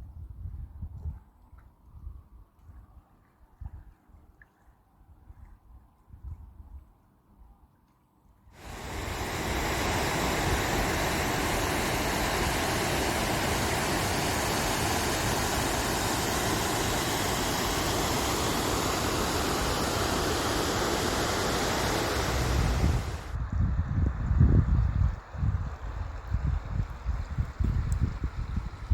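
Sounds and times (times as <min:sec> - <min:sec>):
rushing water: 0:08.6 - 0:23.4.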